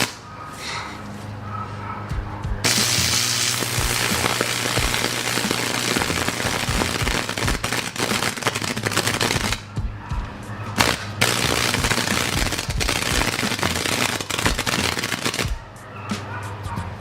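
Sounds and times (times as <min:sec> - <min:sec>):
electric arc crackling and sizzling: 0:02.6 - 0:09.6, 0:10.8 - 0:15.6.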